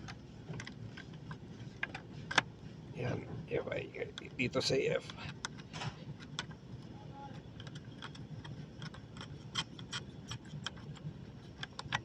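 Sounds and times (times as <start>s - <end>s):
clicks of plastic and metal parts: 11.6s - 12.0s.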